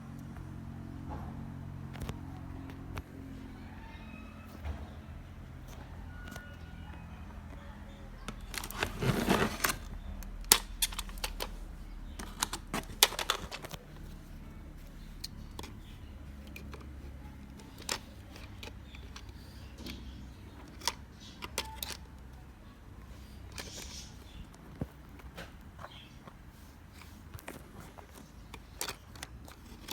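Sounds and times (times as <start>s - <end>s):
packaging clicks and taps: 8.2s - 14.2s, 14.9s - 26.4s
cardboard and plastic rustling: 8.2s - 29.9s.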